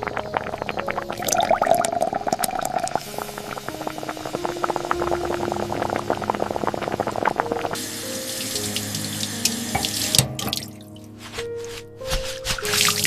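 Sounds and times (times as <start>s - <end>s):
liquid bubbling and crackling: 0.0s - 10.3s
water pouring: 0.0s - 10.9s, 12.1s - 13.0s.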